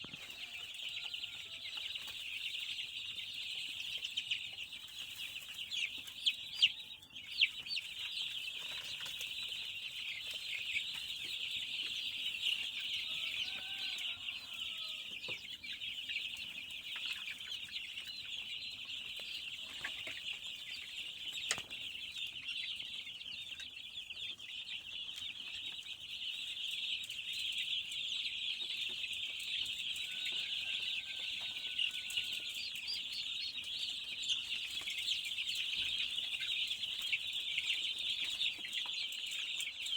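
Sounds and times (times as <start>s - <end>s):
lower chicken calls: 0.0s - 2.2s, 12.5s - 15.6s
chicks peeping: 0.0s - 39.9s.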